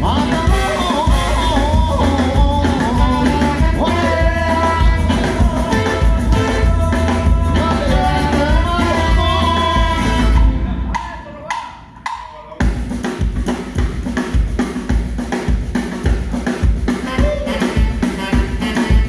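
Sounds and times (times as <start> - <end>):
live ska rock band: 0.0 - 19.0.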